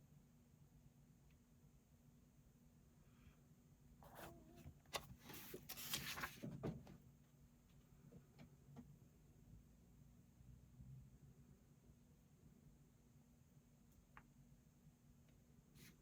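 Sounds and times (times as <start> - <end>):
faint steady hum: 0.0 - 16.0
book page turning: 4.0 - 6.5.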